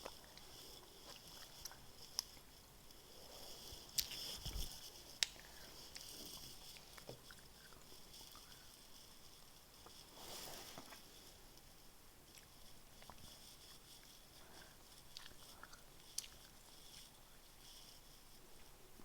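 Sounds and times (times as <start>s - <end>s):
wet chewing clicks and smacks: 15.1s - 16.5s.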